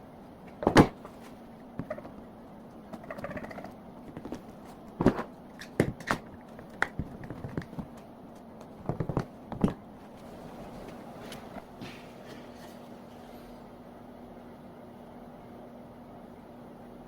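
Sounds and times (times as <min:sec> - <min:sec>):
objects knocking and tapping: 0:08.8 - 0:09.8.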